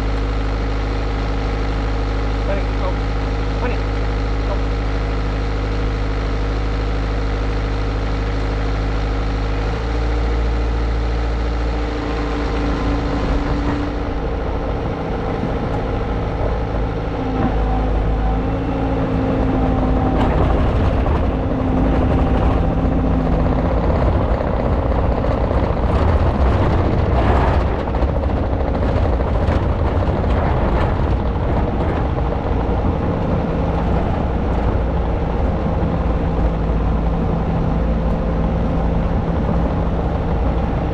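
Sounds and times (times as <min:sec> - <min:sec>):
diesel engine running: 0:00.0 - 0:40.9
crackling noise: 0:20.1 - 0:37.0.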